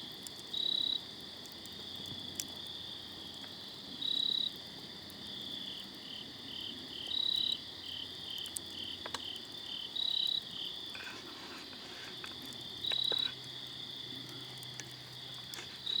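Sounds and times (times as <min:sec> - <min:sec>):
insect trill: 0:05.3 - 0:16.0
campfire pops: 0:08.4 - 0:09.7, 0:10.9 - 0:16.0.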